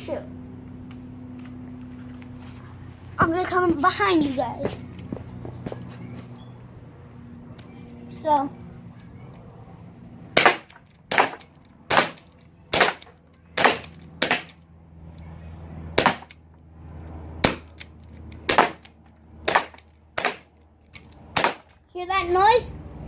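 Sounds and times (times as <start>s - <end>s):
bb pistol shots: 10.4s - 14.6s, 16.0s - 16.4s, 17.4s - 17.9s, 18.5s - 21.8s.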